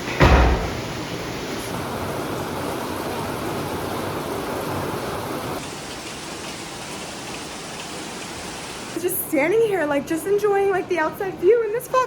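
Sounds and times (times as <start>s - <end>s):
rain pouring: 0.0s - 9.6s.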